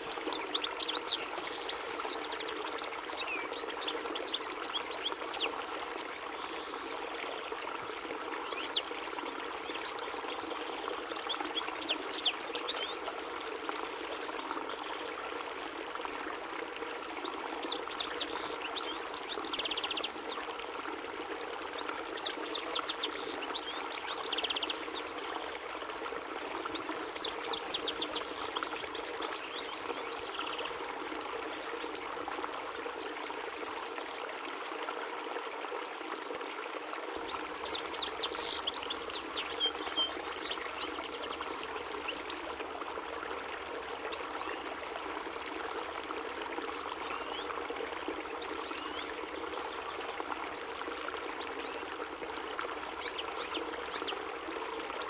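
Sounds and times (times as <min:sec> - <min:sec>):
running water: 0:00.0 - 0:55.0
goldfinch twittering: 0:11.0 - 0:13.0, 0:21.9 - 0:25.0, 0:26.8 - 0:30.4, 0:37.4 - 0:42.6.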